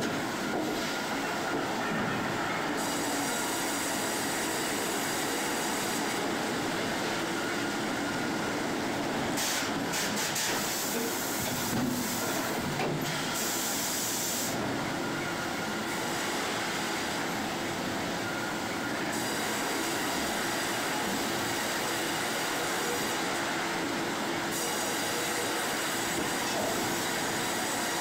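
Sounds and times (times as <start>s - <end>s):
hiss: 9.4s - 14.6s.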